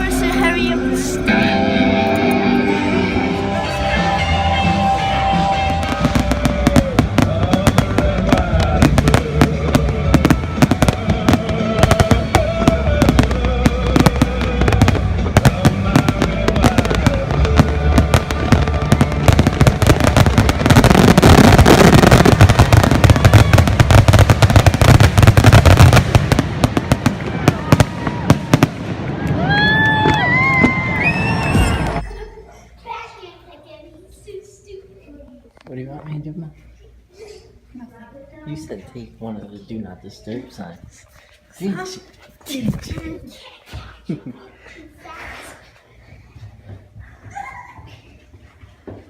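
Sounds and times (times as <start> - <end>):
music: 0.0 - 23.5
fireworks bursting and crackling: 3.2 - 32.3.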